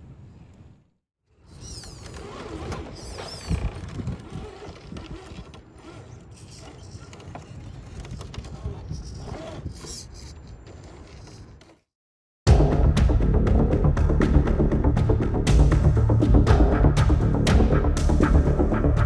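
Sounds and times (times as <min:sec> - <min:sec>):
small electric motor whining: 0:01.3 - 0:11.8
knocks and scrapes on rock: 0:01.5 - 0:11.9.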